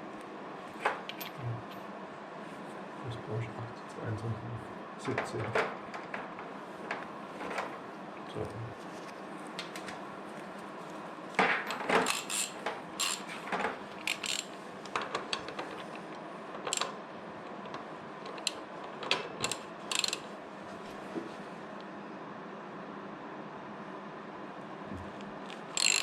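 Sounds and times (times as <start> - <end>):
ratchet wrench clicking: 12.0 - 13.3, 14.0 - 14.5, 19.4 - 20.2, 25.5 - 26.0.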